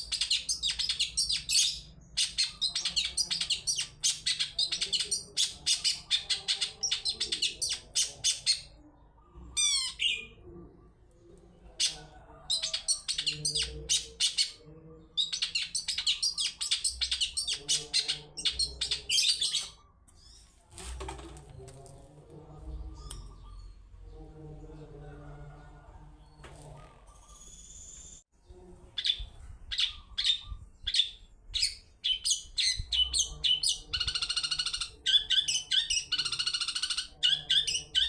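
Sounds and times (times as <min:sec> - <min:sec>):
bird singing high chirps: 0:22.8 - 0:24.3, 0:26.2 - 0:28.2.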